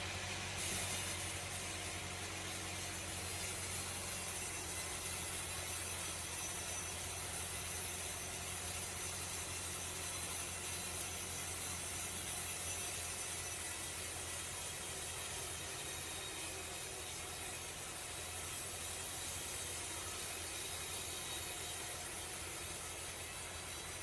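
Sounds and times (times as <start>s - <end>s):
machinery hiss: 0.5s - 1.7s.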